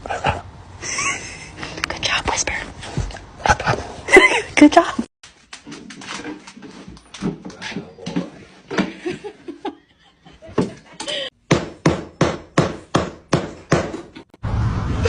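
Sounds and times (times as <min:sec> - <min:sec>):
sharp knocks: 0:11.5 - 0:14.3.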